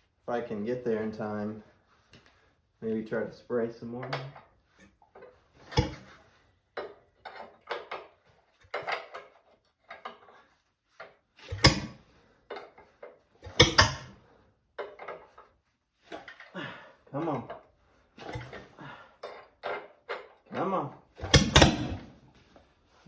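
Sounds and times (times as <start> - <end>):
metal clanks and knocks: 21.2 - 22.1.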